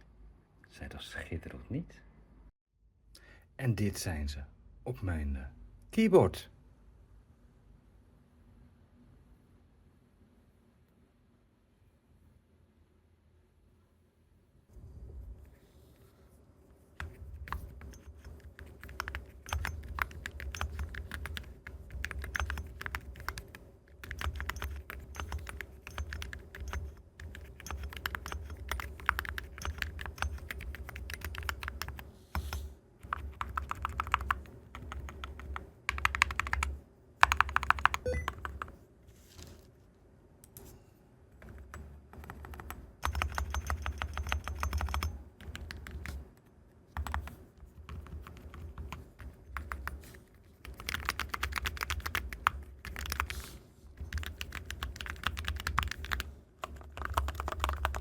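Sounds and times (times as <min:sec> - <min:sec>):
keyboard typing clicks: 0:17.0 - 0:38.8, 0:41.4 - 0:46.2, 0:50.6 - 0:53.3, 0:54.0 - 0:58.0.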